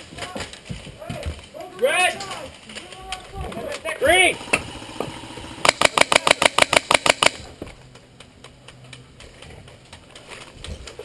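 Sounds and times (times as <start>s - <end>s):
rapid airsoft gun shots: 4.3s - 7.5s.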